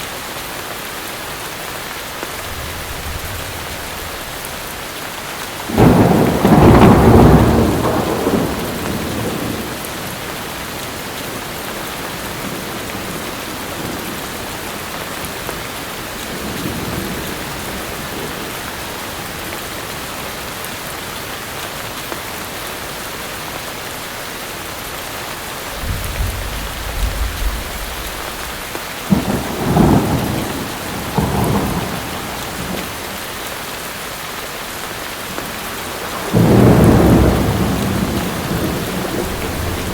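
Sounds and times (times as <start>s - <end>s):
heavy rain: 0.0s - 39.9s
thunder: 2.4s - 4.7s, 5.7s - 10.2s, 25.7s - 33.0s, 35.9s - 39.9s.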